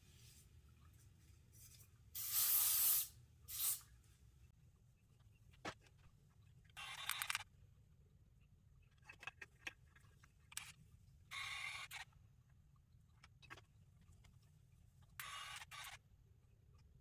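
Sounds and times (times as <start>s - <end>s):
hairspray hissing: 2.2s - 3.8s.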